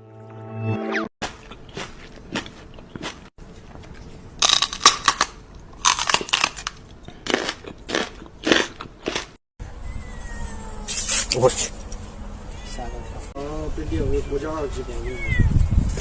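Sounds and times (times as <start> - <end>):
crunching and crackling: 1.2 - 9.4.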